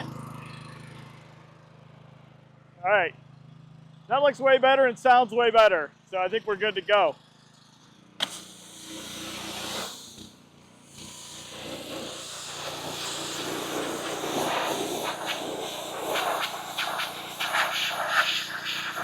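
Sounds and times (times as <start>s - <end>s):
pressure washer jet hissing: 8.2s - 19.0s.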